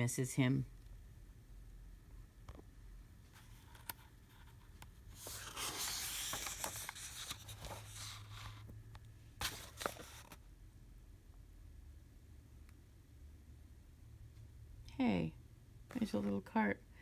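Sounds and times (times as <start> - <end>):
book page turning: 3.5 - 8.7, 9.4 - 10.4.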